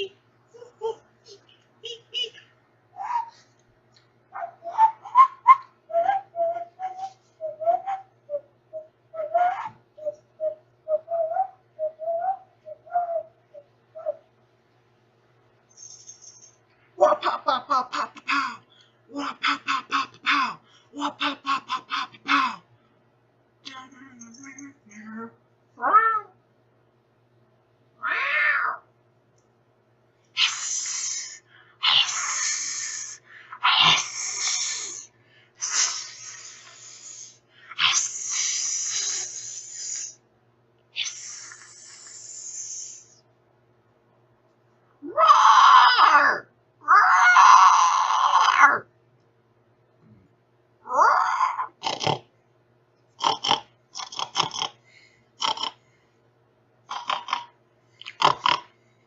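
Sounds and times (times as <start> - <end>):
person hissing through teeth: 30.4 - 40.2, 41.0 - 43.2
person snorting like a pig: 51.8 - 52.2, 53.2 - 54.8, 55.4 - 55.8, 56.9 - 58.7.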